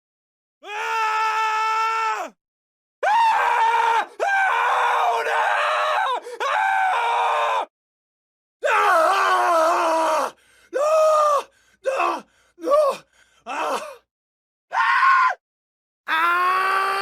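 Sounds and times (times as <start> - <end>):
man screaming: 16.1 - 17.0.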